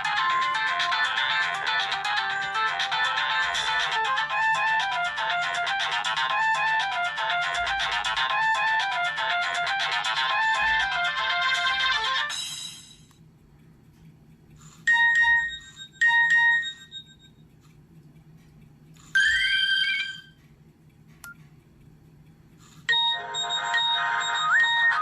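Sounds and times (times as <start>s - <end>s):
electronic ringtones: 14.9s - 17.3s, 19.2s - 20.3s, 22.9s - 25.0s
click: 20.4s - 22.4s.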